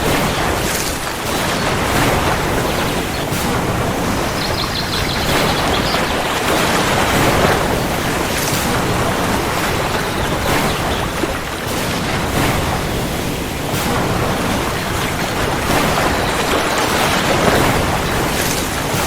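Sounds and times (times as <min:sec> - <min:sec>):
heavy rain falling: 0:00.0 - 0:19.0.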